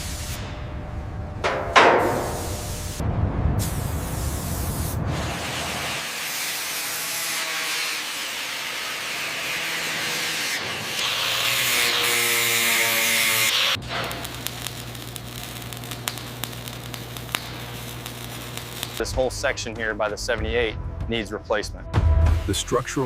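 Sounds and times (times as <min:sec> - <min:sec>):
steady spray-like hissing: 0:00.0 - 0:00.5, 0:02.0 - 0:03.0, 0:03.6 - 0:07.0
low rumble: 0:00.4 - 0:06.0.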